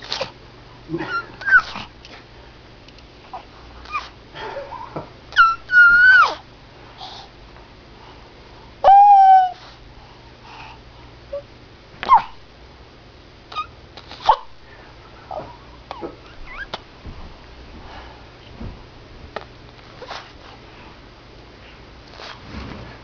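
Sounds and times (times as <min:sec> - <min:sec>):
small child squealing: 0:05.4 - 0:06.4, 0:08.8 - 0:09.6, 0:13.5 - 0:14.4, 0:16.0 - 0:16.8.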